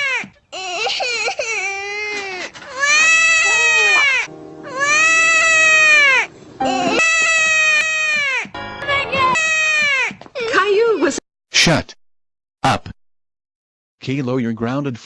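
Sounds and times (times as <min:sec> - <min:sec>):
child crying and wailing: 0:00.0 - 0:11.1.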